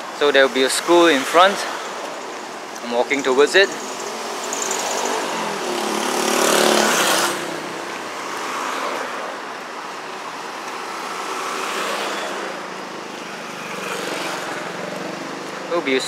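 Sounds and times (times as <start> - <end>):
street traffic: 0.0 - 16.0
vehicle passing close: 3.9 - 9.4.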